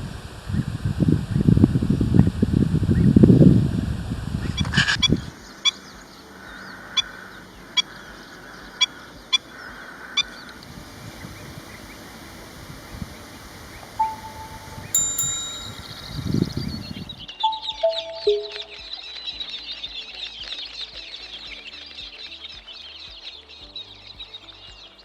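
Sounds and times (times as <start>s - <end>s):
ringing chime-like tones: 14.0s - 16.6s, 17.5s - 18.8s.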